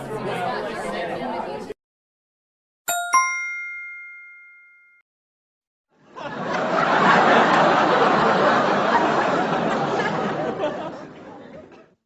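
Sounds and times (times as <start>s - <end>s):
crowd chattering and laughing: 0.0s - 1.8s, 6.0s - 12.0s
bright bell ding: 2.9s - 5.0s.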